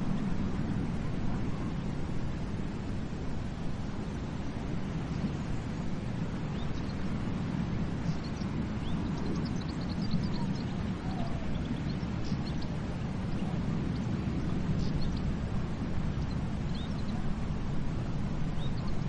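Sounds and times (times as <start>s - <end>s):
ocean waves on beach: 0.0s - 19.0s
small birds chirping: 4.1s - 17.6s, 18.4s - 19.0s.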